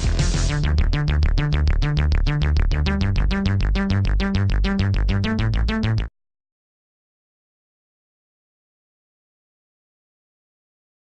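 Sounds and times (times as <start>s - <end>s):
electronic music with synth pulse: 0.0s - 6.1s.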